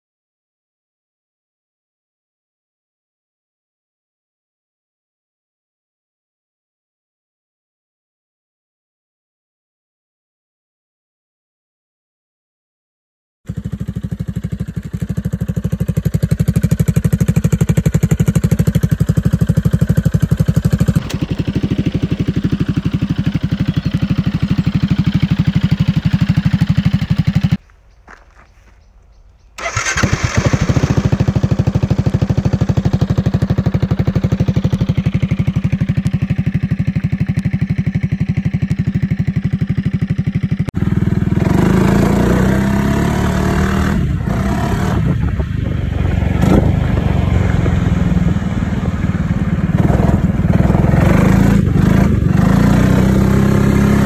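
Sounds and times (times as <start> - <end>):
scooter engine running: 13.5 - 28.2, 29.6 - 54.0.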